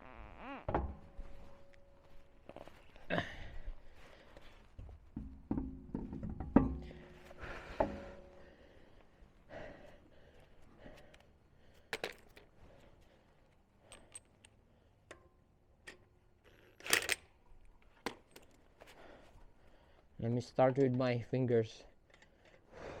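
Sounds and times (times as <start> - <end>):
metal clank: 5.2 - 7.2
metallic clinks of wheel nuts: 13.8 - 18.6.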